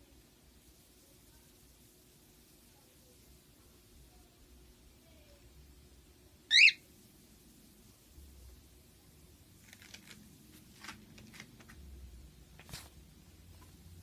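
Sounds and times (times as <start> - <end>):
bird chirping: 6.5 - 6.8
faint scratchy bird chirps: 6.5 - 6.8.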